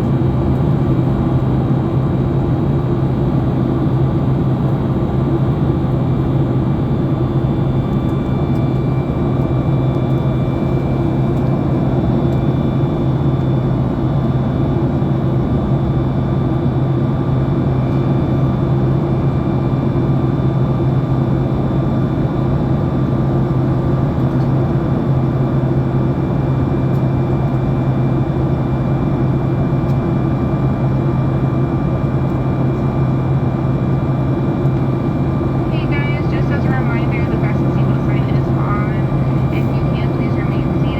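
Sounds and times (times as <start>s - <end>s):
airplane cabin drone: 0.0s - 40.9s.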